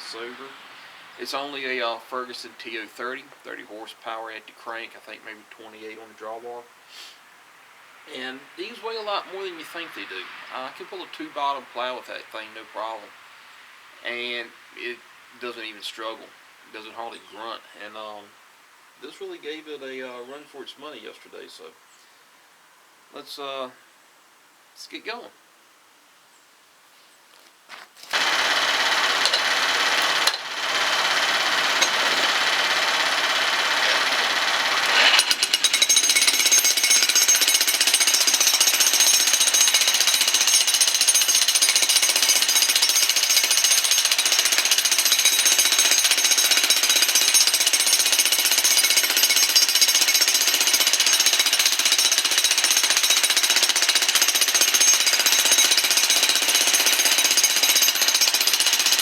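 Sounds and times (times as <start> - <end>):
jackhammer breaking concrete: 28.1 - 59.0.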